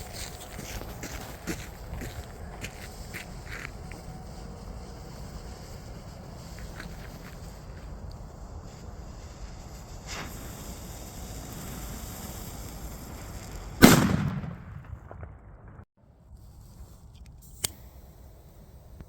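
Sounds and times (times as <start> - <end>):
firework bang: 9.4 - 15.9.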